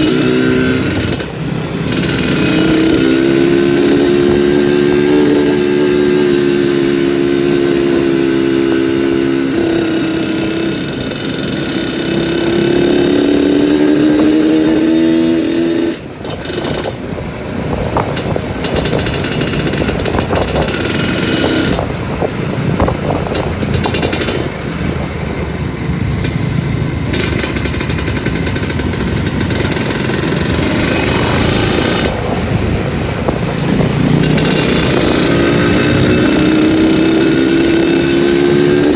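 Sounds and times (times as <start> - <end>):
motorcycle engine revving: 0.0 - 38.9
knocks and rattles: 17.9 - 24.7, 27.1 - 38.9.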